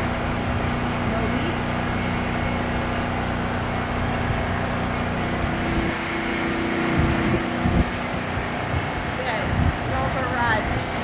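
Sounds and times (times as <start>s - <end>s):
generator engine running: 0.0s - 11.0s
low thumps: 3.5s - 9.8s.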